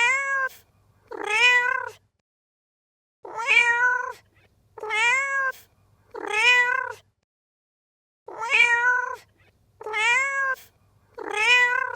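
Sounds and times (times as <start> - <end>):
cat meowing: 0.0 - 2.0, 3.2 - 7.1, 8.3 - 11.9.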